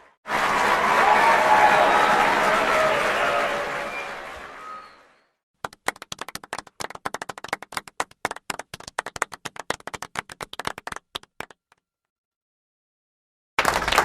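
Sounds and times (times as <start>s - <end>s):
hand clapping: 5.6s - 11.8s, 13.6s - 14.0s.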